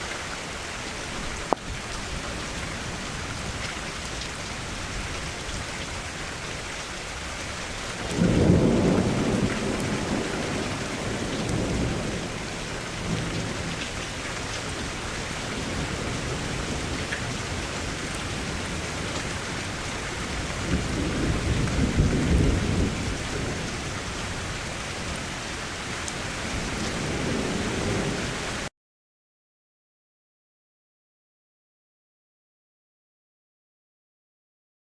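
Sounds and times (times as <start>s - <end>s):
steady rain: 0.0s - 28.7s
thunder rolling: 8.0s - 13.8s, 14.8s - 25.2s.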